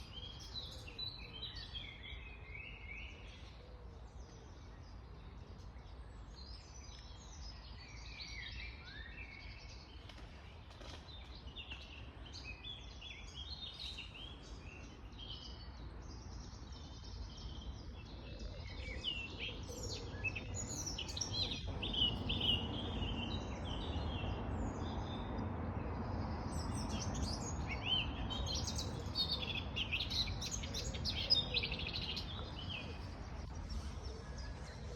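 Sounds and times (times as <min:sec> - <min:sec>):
birds chirping: 0:04.8 - 0:25.4, 0:26.1 - 0:34.9.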